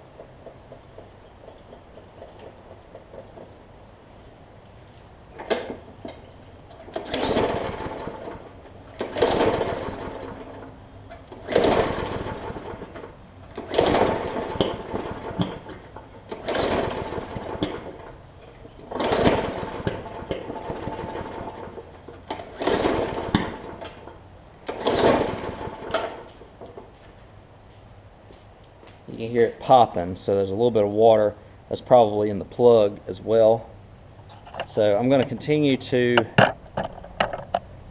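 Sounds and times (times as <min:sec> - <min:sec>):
mower recoil starter pulls: 0:00.1 - 0:03.7, 0:05.3 - 0:27.0
engine popping without catching: 0:05.3 - 0:26.9.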